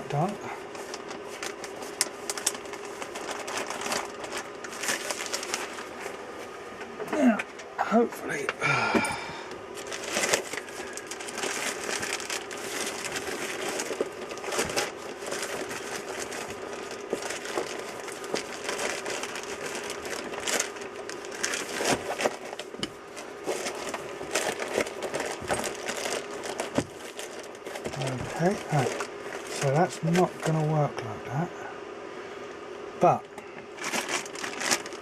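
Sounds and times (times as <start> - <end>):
faint steady hum: 0.0 - 35.0
fabric rustling and crinkling: 0.2 - 6.5, 9.7 - 30.6, 33.7 - 35.0.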